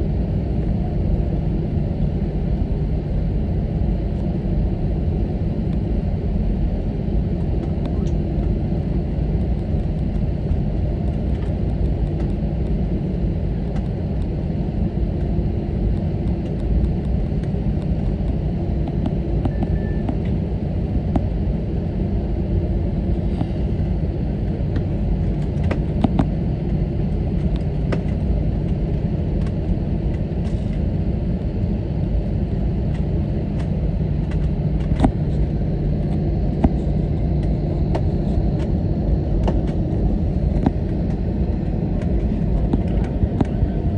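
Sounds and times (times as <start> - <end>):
aircraft engines idling: 0.0 - 43.9
small cabin clicks and rattles: 42.0 - 43.8.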